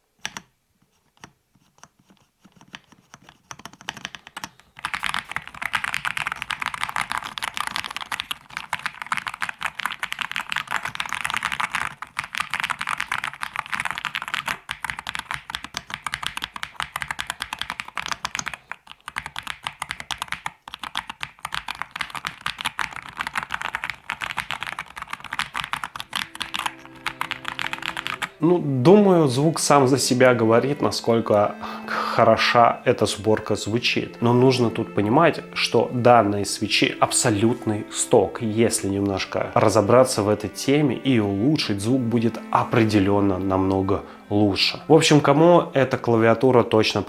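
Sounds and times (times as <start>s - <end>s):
mechanical keyboard typing: 0.2s - 28.4s.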